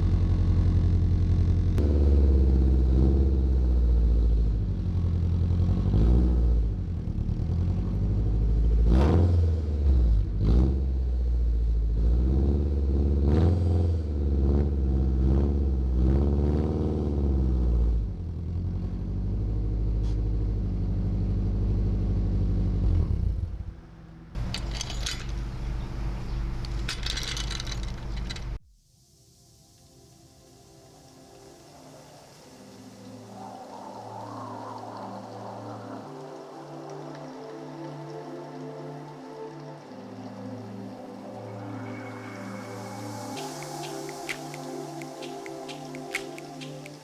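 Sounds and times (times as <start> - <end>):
fast even pulsing with hiss: 41.4 - 47.0.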